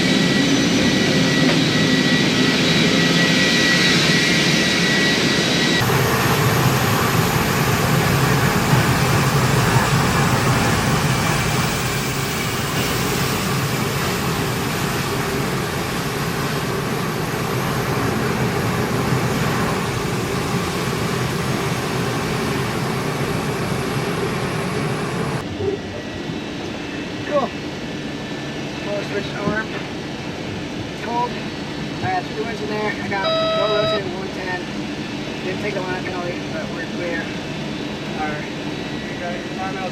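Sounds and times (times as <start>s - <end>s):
high turbine whine: 0.0s - 39.9s
jet engines rushing: 0.0s - 39.9s.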